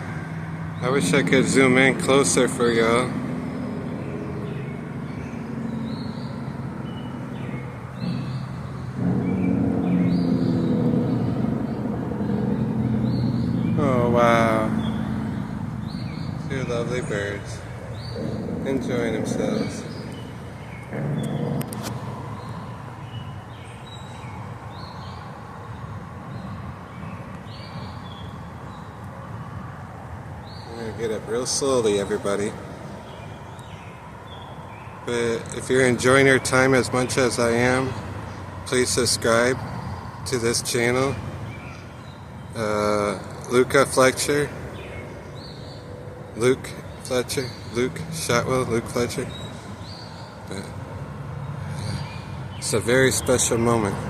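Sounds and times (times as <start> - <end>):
low engine hum: 0.0 - 54.0
steady low rumble: 0.8 - 24.8
high bird chirps: 0.8 - 29.5.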